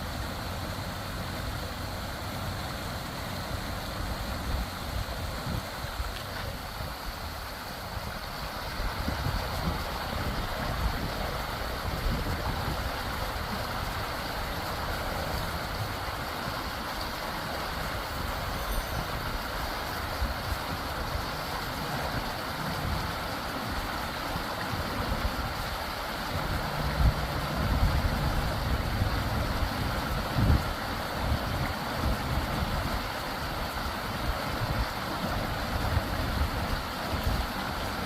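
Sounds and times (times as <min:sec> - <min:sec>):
creek water running: 0:00.0 - 0:38.0
wind buffeting microphone: 0:08.6 - 0:14.2, 0:26.4 - 0:38.0.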